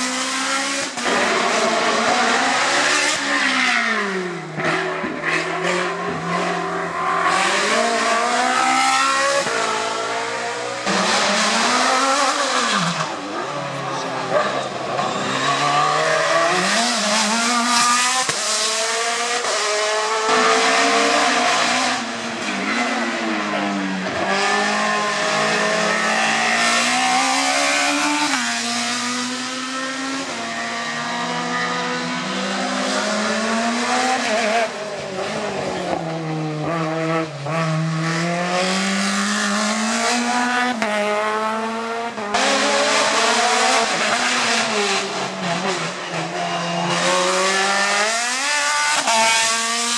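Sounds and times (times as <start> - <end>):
race car engines revving: 0.0 - 49.9
tyre squeal: 15.0 - 16.2, 45.8 - 47.3.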